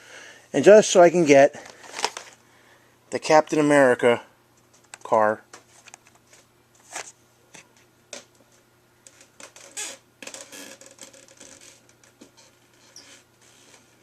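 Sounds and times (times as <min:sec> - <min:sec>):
packaging rustling: 0:01.6 - 0:02.4.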